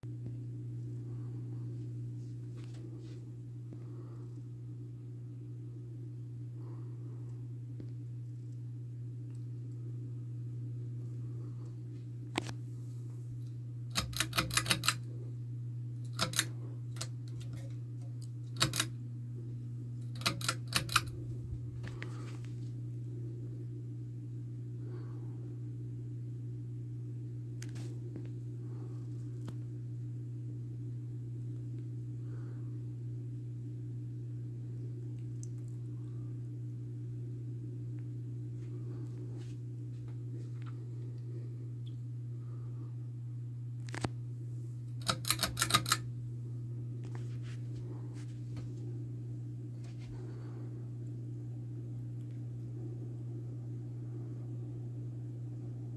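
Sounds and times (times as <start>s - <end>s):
ceiling fan motor hum: 0.1s - 55.9s
sharp clicks: 13.9s - 15.0s, 18.6s - 18.9s, 20.0s - 21.1s, 45.0s - 46.0s.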